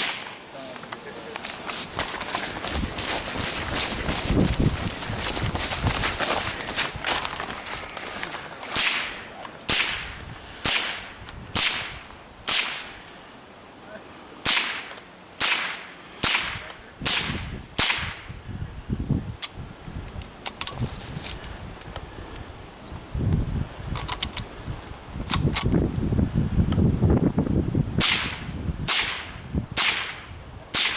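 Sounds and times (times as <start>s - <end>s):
rifle shots: 0.0s - 0.4s, 8.8s - 13.0s, 14.4s - 18.2s, 28.0s - 30.2s.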